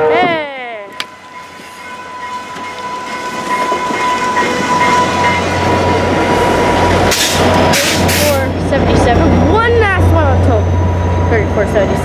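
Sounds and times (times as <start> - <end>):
passenger train rolling past: 0.0 - 12.0.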